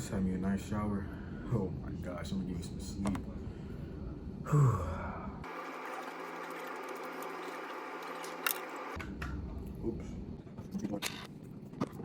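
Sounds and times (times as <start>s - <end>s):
faint hum: 0.0s - 12.0s
man sighing heavily: 4.4s - 5.4s.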